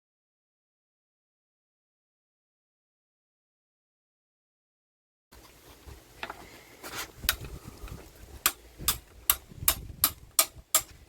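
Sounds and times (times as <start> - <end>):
hand tools tapping metal: 7.2 - 11.0.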